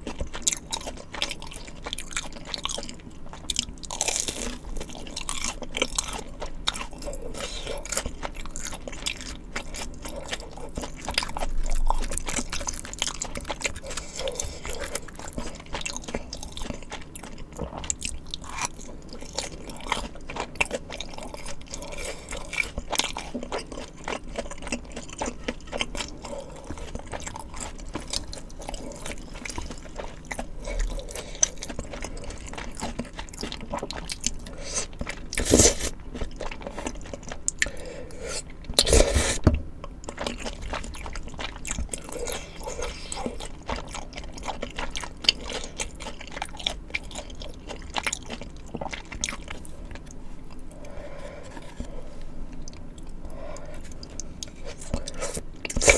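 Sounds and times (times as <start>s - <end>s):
chewing with crunchy bites: 0.0s - 55.9s
wet mouth noises: 34.5s - 36.0s, 37.5s - 39.5s, 54.2s - 55.9s.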